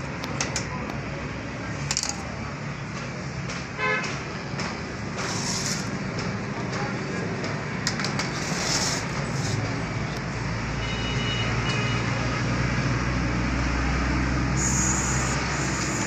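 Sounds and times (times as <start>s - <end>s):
road traffic: 0.0s - 16.0s
vehicle engine humming: 13.9s - 16.0s.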